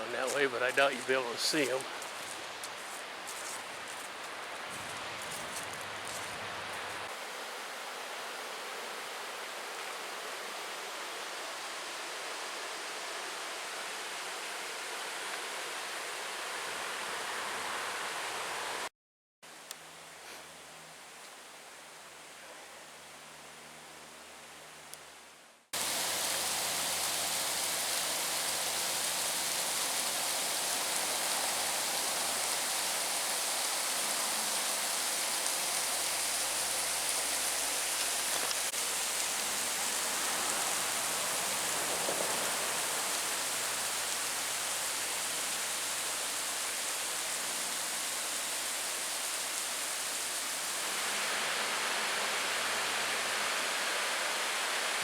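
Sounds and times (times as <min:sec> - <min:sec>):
river water rushing over rapids: 0:25.8 - 0:55.0.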